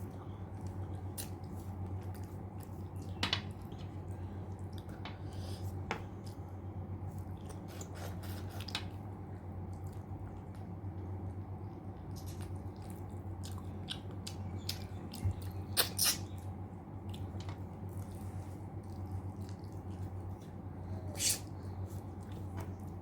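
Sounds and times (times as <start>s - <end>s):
chewing and swallowing: 9.6s - 20.6s
wet mouth clicks and smacks: 13.5s - 16.3s.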